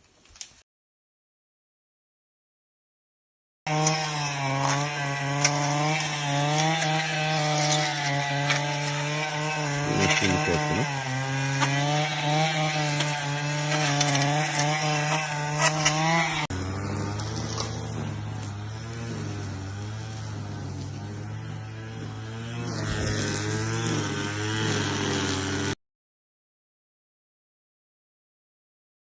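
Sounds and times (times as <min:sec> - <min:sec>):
small power tool engine running: 0:03.7 - 0:25.8.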